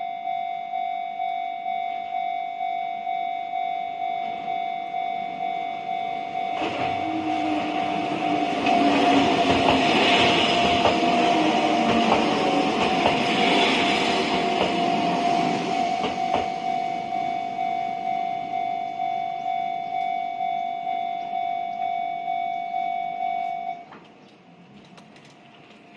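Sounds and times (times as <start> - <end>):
level crossing bell ringing: 0.0 - 23.9
train rumble: 4.2 - 20.0
wheels clicking over rail joints: 6.6 - 15.0.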